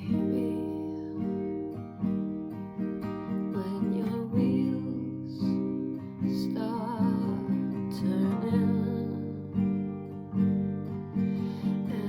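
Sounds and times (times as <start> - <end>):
acoustic guitar strumming chords: 0.0 - 12.0.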